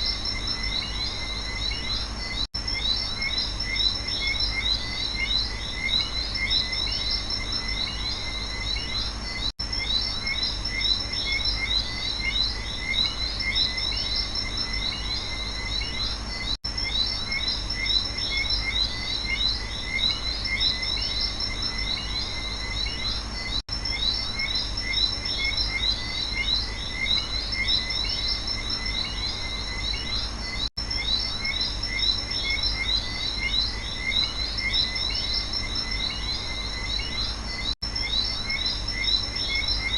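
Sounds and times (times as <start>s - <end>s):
frogs and insects chirping: 0.0s - 39.9s.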